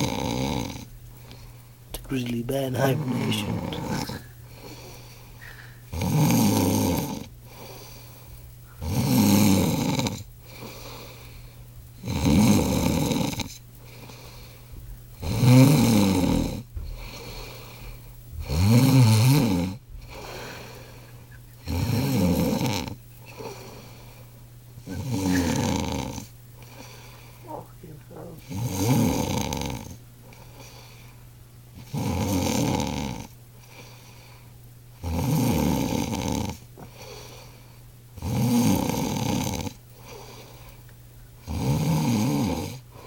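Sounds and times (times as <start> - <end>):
man snoring loudly: 0.0 - 0.9, 2.5 - 4.9, 5.9 - 7.6, 8.8 - 10.2, 12.0 - 13.6, 15.2 - 17.3, 18.4 - 20.8, 21.6 - 23.8, 24.8 - 30.0, 31.8 - 33.3, 35.0 - 37.0, 38.2 - 39.8, 41.4 - 42.8
quiet breathing: 0.0 - 6.0, 7.0 - 8.9, 10.3 - 12.0, 13.4 - 14.9, 16.2 - 18.6, 19.8 - 31.9, 33.5 - 34.6, 36.1 - 38.0, 39.8 - 41.5, 42.8 - 43.0.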